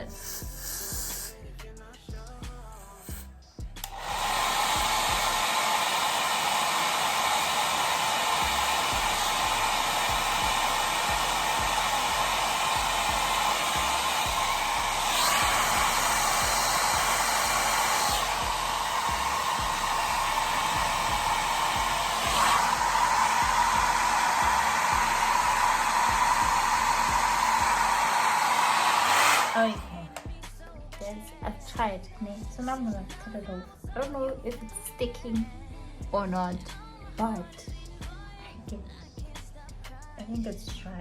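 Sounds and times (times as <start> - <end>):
hair dryer blowing: 0.0 - 1.4, 2.9 - 30.4.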